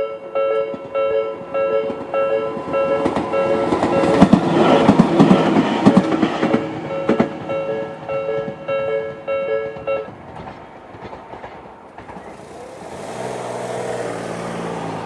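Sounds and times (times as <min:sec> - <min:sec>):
level crossing warning bell: 0:00.0 - 0:05.7, 0:06.9 - 0:10.1
vehicle engine hum: 0:12.2 - 0:15.0.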